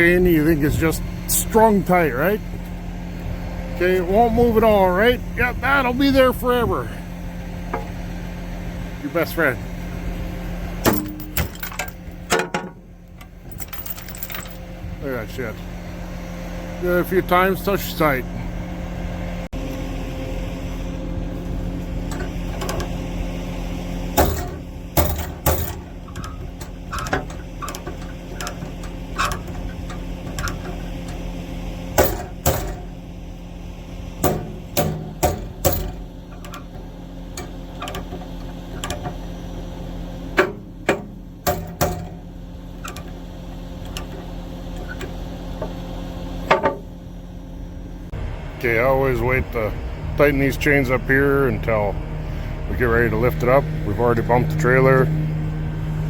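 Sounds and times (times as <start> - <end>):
diesel engine idling: 0.0 - 56.0
steel chains clanking: 10.9 - 12.3, 13.3 - 14.6.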